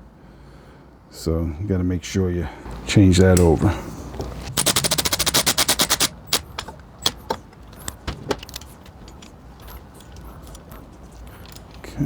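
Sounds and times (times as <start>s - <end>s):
ratchet wrench clicking rapidly: 4.5s - 11.8s
metallic tool clicks and taps: 4.6s - 11.8s.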